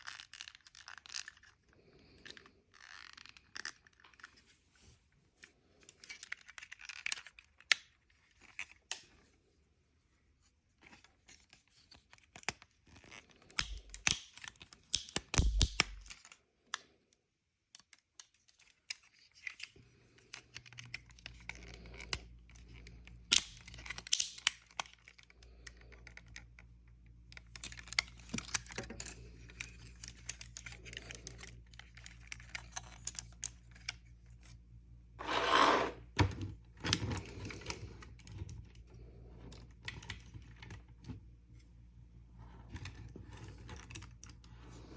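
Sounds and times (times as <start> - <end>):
plastic clicks: 13.5 - 16.9.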